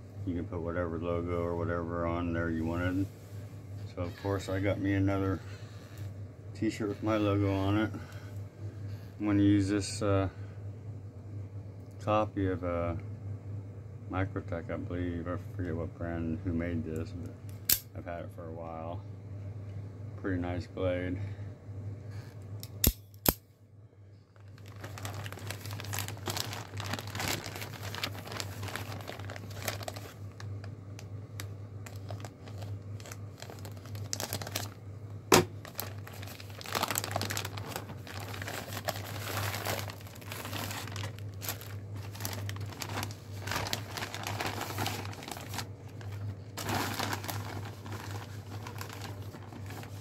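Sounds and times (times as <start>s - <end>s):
packaging crinkling and tearing: 24.4s - 34.8s, 35.4s - 50.0s.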